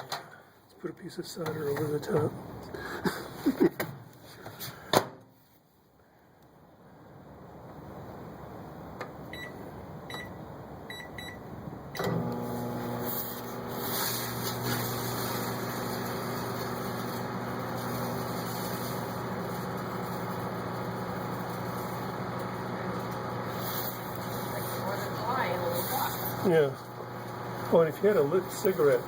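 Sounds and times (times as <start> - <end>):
microwave oven humming: 7.3 - 29.0
microwave keypad beeps: 9.3 - 11.4
steel wool sparking crackle: 12.4 - 29.0.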